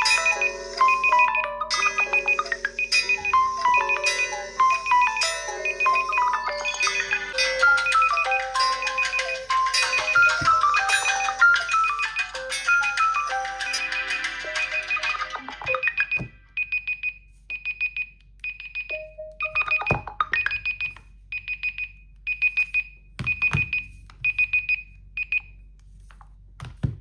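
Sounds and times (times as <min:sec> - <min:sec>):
melodic smartphone ringtone: 0:00.0 - 0:17.1, 0:18.7 - 0:21.0
phone beeping alert: 0:00.0 - 0:25.5.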